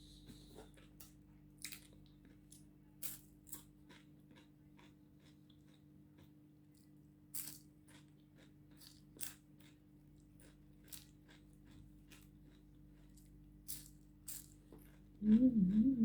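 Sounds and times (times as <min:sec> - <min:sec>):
low steady hum: 0:00.0 - 0:03.2, 0:10.2 - 0:16.0
person eating crisp food: 0:00.8 - 0:16.0.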